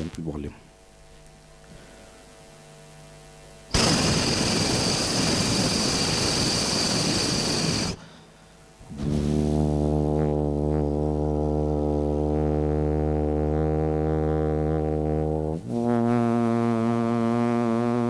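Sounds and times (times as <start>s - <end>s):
faint mains hum: 0.0s - 18.0s
loud rushing hiss from a voice: 3.8s - 8.0s.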